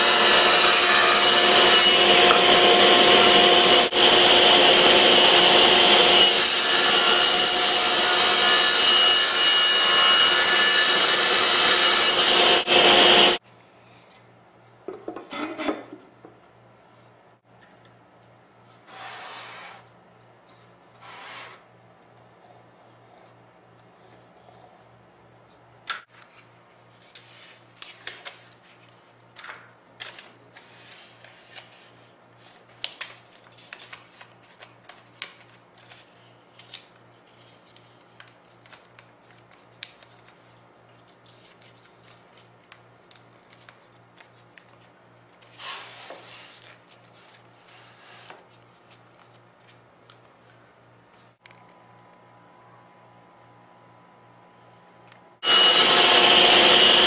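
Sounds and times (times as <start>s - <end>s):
steady low hum: 50.3s - 55.4s.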